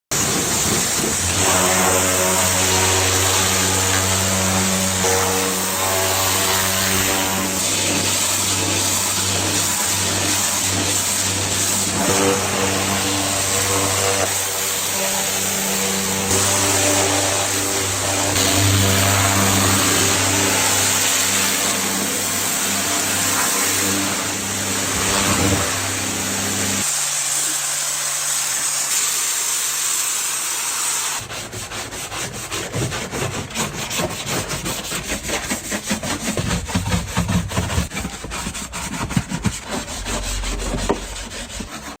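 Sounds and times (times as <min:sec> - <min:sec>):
scrubbing on a car: 0:00.1 - 0:27.6, 0:31.2 - 0:42.0
pressure washer motor humming: 0:00.1 - 0:31.3
water spray hissing: 0:00.1 - 0:31.3.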